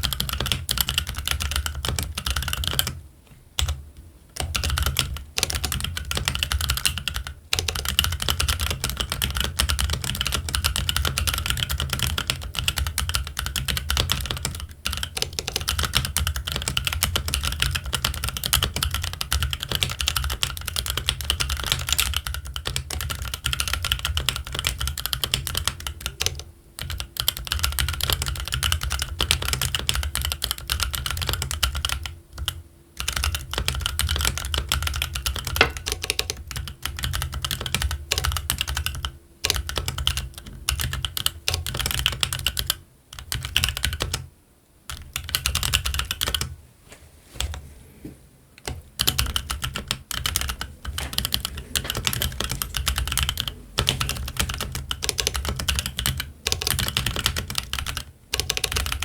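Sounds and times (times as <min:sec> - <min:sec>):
fast typing on mechanical keyboard: 0:00.0 - 0:03.0, 0:03.6 - 0:03.8, 0:04.4 - 0:44.3, 0:44.9 - 0:46.5, 0:48.6 - 0:59.0.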